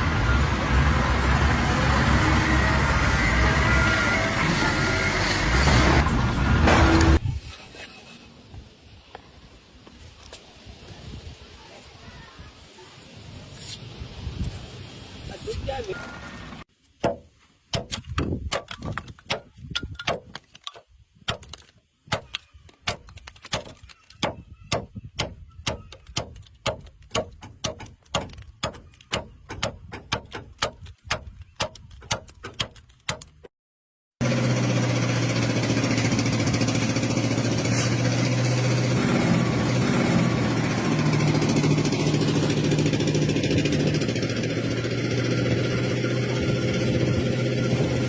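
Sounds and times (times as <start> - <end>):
engine-driven machine running: 0.0 - 7.2, 34.2 - 48.0.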